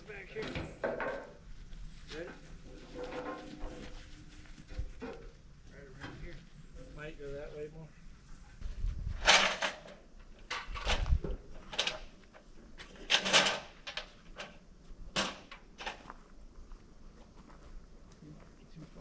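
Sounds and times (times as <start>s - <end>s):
metal frame clunking and scraping: 0.3s - 1.4s, 2.2s - 5.3s, 9.0s - 16.1s.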